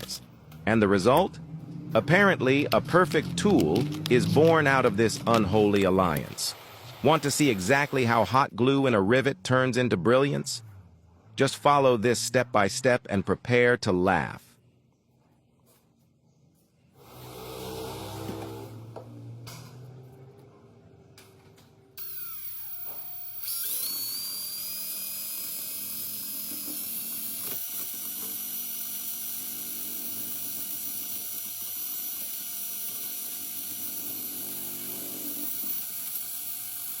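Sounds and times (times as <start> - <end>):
power tool motor whining: 2.0 - 8.3, 17.0 - 20.2, 22.0 - 37.0.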